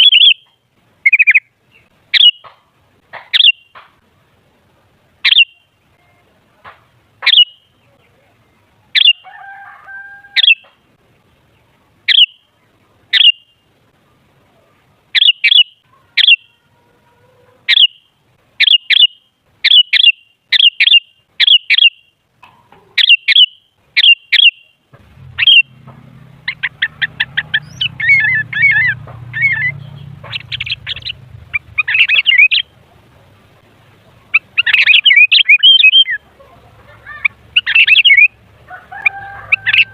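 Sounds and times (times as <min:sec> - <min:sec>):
bird calling and chattering: 0:00.0 - 0:04.0, 0:05.2 - 0:06.0, 0:07.2 - 0:09.5, 0:10.2 - 0:16.6, 0:17.6 - 0:39.9
low hum: 0:24.9 - 0:39.9.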